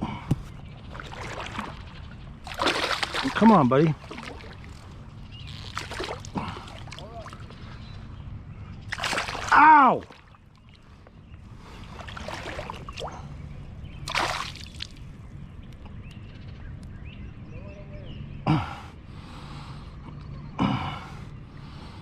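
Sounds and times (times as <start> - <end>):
water sloshing: 0.3 - 7.8, 8.9 - 15.1.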